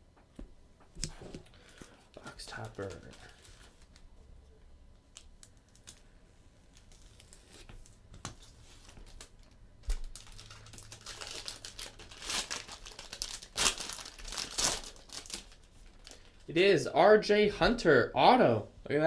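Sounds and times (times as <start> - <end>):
plastic wrapper tearing and crinkling: 1.0 - 4.1, 5.1 - 6.0, 6.7 - 16.4.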